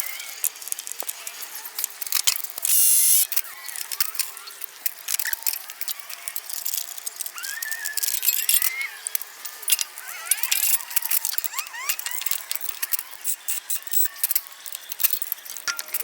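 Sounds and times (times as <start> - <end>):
metal tools clinking: 8.0 - 16.0.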